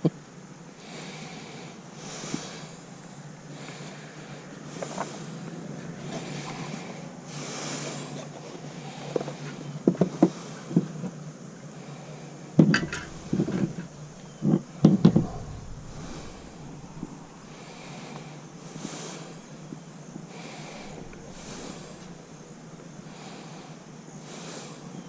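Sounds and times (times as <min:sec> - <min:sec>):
slow breathing: 0:12.0 - 0:25.0
objects knocking and clattering: 0:12.6 - 0:17.2.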